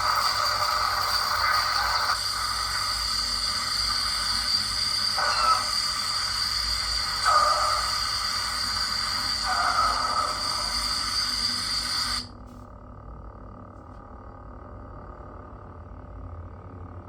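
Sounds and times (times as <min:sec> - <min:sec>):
lightsaber electric hum: 0:00.0 - 0:17.0.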